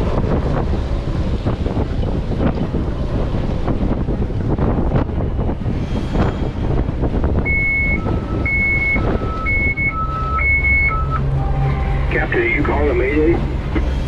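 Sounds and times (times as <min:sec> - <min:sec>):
sea noise: 0:00.0 - 0:14.0
wind: 0:00.0 - 0:14.0
two-tone radio alarm: 0:07.5 - 0:11.2.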